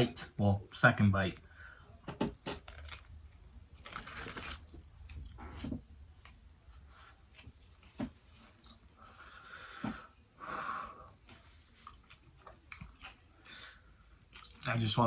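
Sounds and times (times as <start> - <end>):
man breathing hard with wheeze: 9.0 - 11.2.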